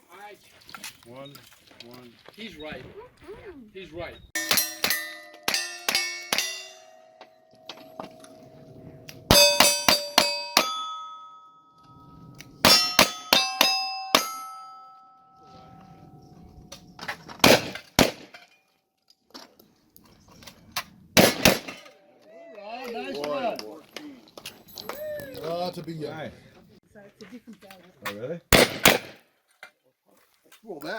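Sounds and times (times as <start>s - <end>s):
bullets hitting steel targets: 4.4s - 8.4s, 9.1s - 11.4s, 12.6s - 15.0s
loud sharp gunshot cracks: 17.4s - 18.3s, 21.2s - 21.8s, 28.6s - 29.2s.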